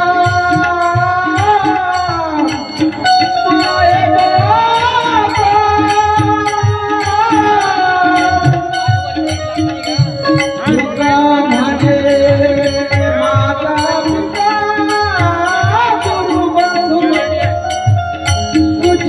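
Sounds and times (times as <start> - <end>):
drum beat: 0.0 - 19.0
man singing devotional song: 0.0 - 19.0.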